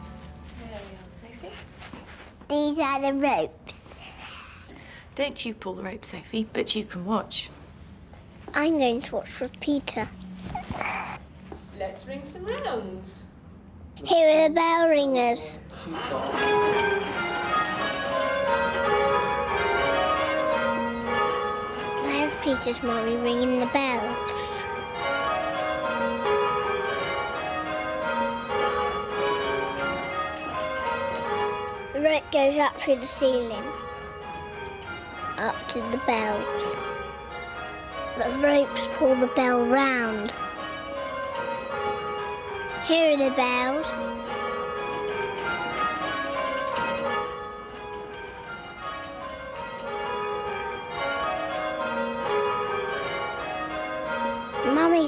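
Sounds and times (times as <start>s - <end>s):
church bells ringing rounds: 14.2s - 55.0s.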